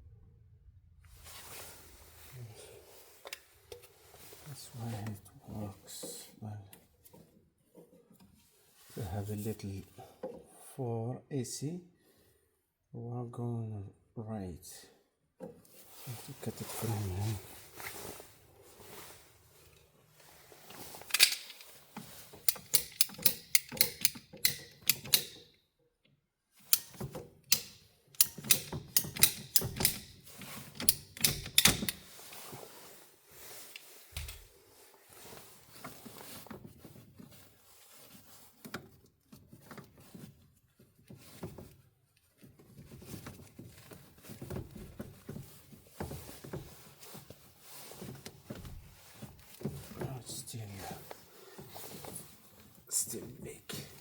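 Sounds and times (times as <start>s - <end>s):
sheet metal handling: 20.8s - 25.4s
tin snips cutting sheet metal: 22.8s - 25.4s.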